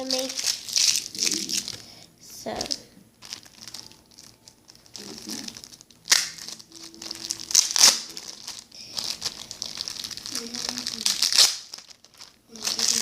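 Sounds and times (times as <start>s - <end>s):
plastic bag crinkling: 0.0s - 13.0s.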